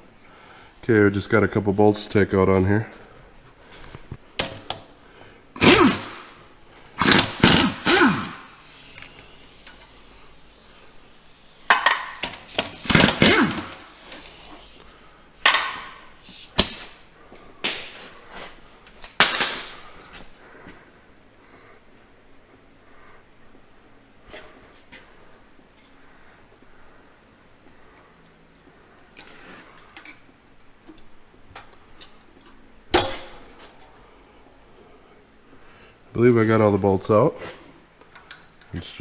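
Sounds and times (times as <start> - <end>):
impact wrench bursts: 5.6 - 6.4, 7.0 - 14.8.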